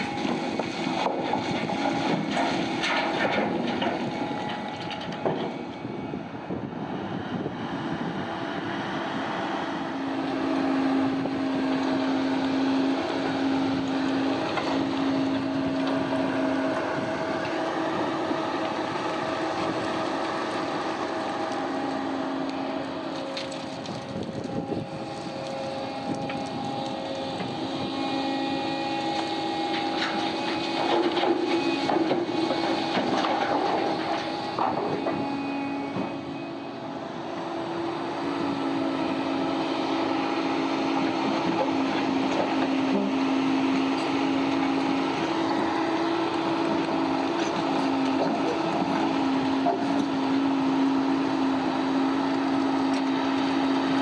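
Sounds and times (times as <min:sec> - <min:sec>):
diesel machinery din: 0:00.0 - 0:54.0
machinery whining tones: 0:09.2 - 0:41.6.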